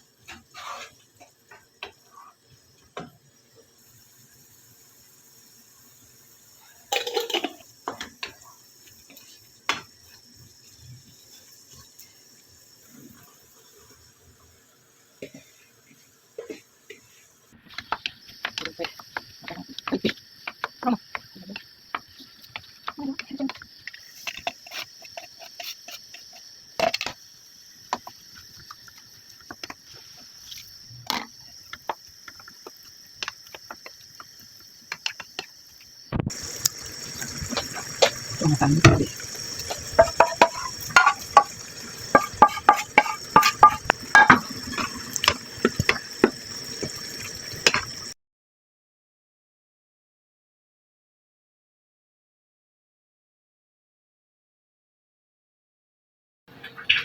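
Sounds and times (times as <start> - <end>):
utensils or dishes clinking: 6.9 - 7.6, 37.6 - 45.8.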